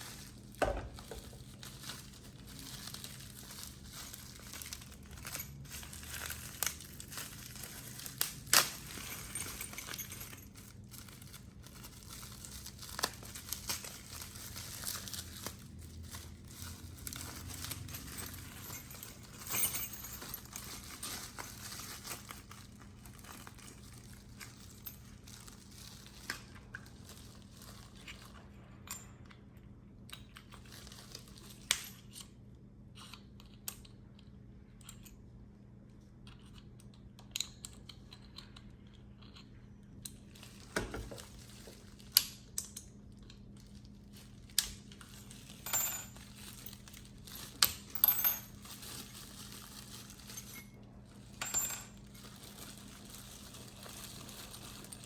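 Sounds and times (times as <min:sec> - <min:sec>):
metal drill bits clinking: 0:03.0 - 0:11.8, 0:16.4 - 0:22.5, 0:45.0 - 0:55.0.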